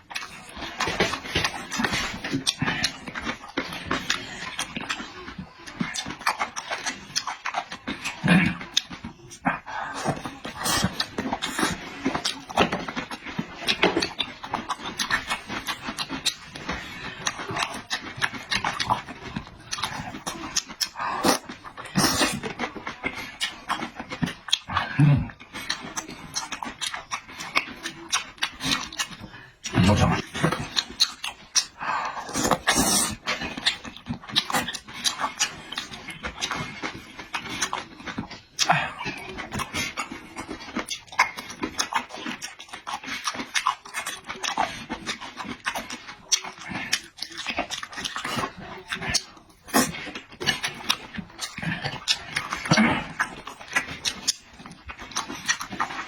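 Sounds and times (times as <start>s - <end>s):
slurping: 0.0s - 56.0s
wet chewing and mouth smacks: 0.0s - 56.0s
slurp: 13.5s - 27.0s, 27.6s - 41.0s.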